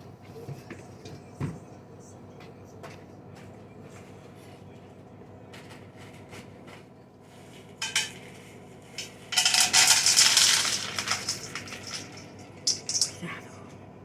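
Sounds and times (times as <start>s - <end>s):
hard objects clinking and rattling: 7.8s - 13.3s.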